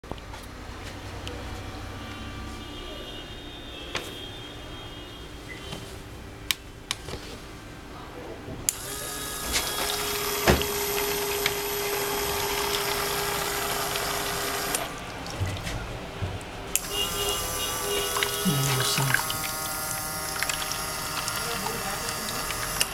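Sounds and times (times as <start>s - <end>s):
water spraying: 8.7s - 16.1s, 16.8s - 22.9s
small water pump humming: 8.7s - 22.9s.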